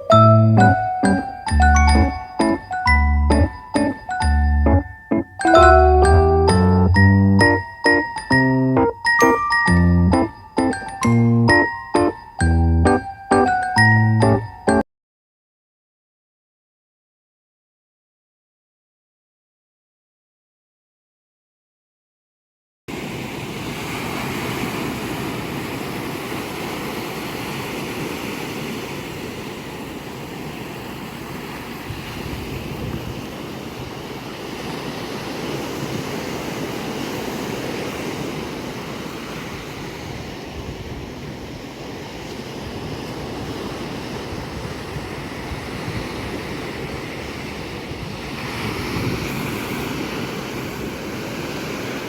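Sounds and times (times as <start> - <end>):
ocean waves breaking on beach: 22.9 - 52.0
wind on microphone: 31.8 - 34.0, 42.6 - 49.8.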